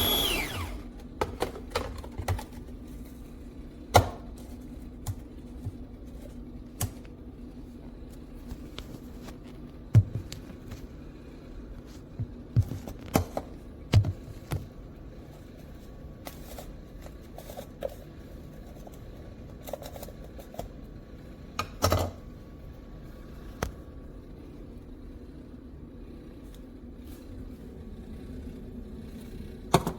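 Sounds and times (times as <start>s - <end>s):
steady low hum: 0.0s - 29.9s.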